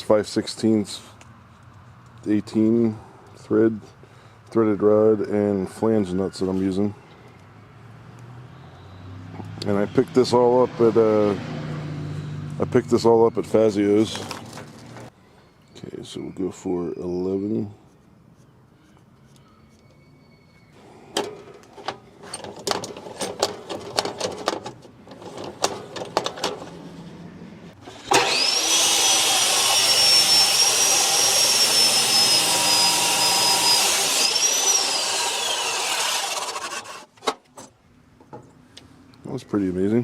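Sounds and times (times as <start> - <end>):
metal clicks and knocks: 21.2 - 26.7
chop saw cutting steel rod: 27.8 - 37.3.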